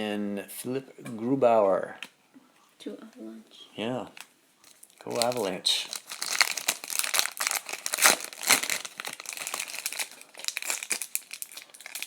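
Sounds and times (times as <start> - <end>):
wrapper crinkling and crackling: 4.2 - 12.0.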